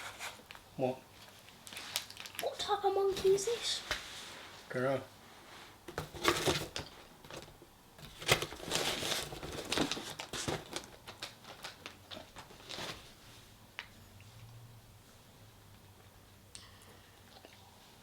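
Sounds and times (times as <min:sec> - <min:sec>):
plastic packaging crinkling: 0:01.2 - 0:03.8, 0:06.0 - 0:13.2.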